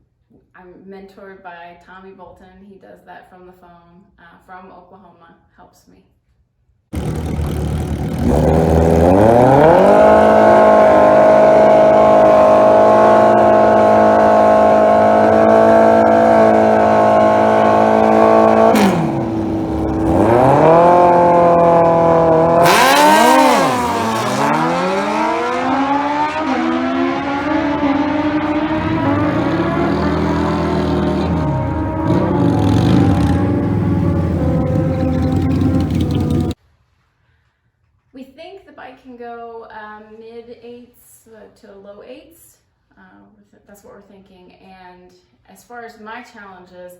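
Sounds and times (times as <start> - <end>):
motorcycle engine revving: 7.0 - 36.6
sudden engine blast: 7.0 - 36.6.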